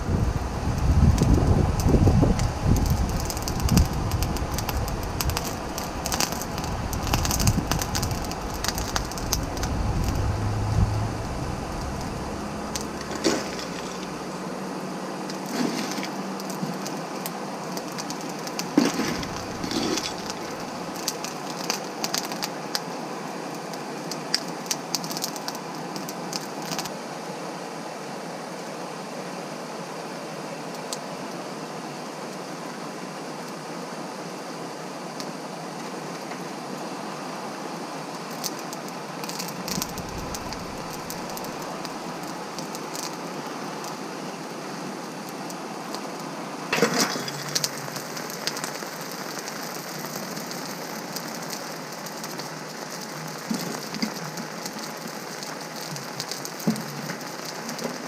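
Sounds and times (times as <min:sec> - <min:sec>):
forced-air blast rushing: 0:00.0 - 0:14.6, 0:18.8 - 0:21.0, 0:39.5 - 0:42.2
coals crackling and popping: 0:00.0 - 0:27.1, 0:38.0 - 0:58.0.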